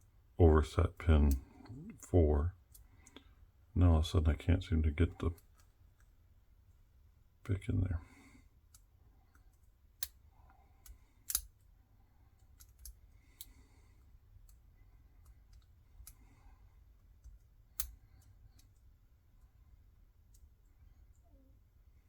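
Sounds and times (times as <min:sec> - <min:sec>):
lock pick clicking in padlock: 0:10.8 - 0:11.6, 0:12.4 - 0:13.5.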